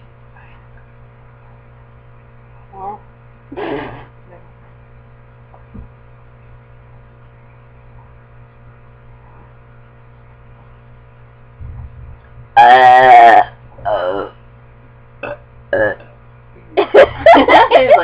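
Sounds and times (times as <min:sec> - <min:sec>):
low electrical hum: 0:00.0 - 0:18.0
low rumble: 0:11.5 - 0:12.6.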